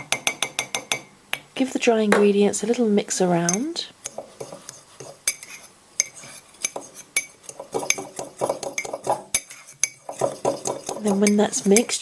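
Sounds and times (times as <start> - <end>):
spoon clinking and scraping a mug: 3.5 - 12.0.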